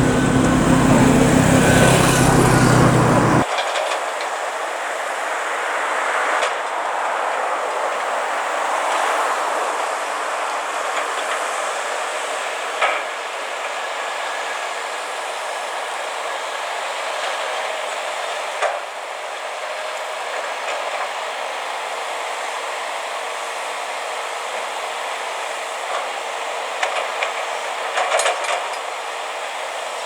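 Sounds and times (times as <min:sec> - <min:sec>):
heavy machinery din: 0:00.0 - 0:03.4.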